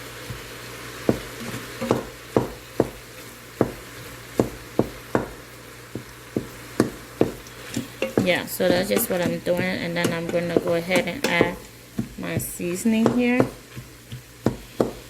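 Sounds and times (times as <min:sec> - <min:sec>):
meat sizzling: 0:00.0 - 0:15.0
utensil knocking on metal pot: 0:08.0 - 0:13.6.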